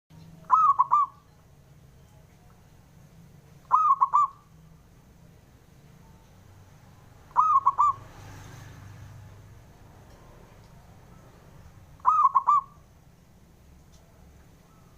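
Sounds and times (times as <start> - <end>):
dove cooing: 0.4 - 1.3, 3.6 - 4.5, 7.3 - 8.1, 12.0 - 12.8.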